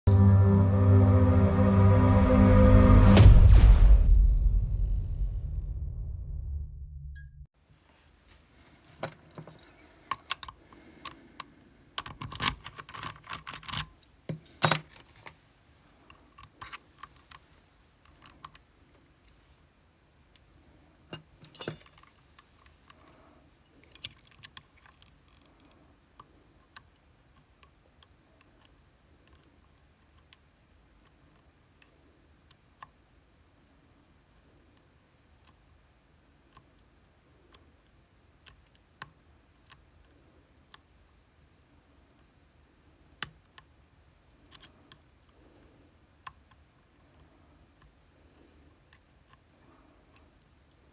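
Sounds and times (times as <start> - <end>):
lock picks jingling and clattering: 9.0 - 10.6, 12.0 - 15.3, 21.2 - 22.2, 23.9 - 25.4.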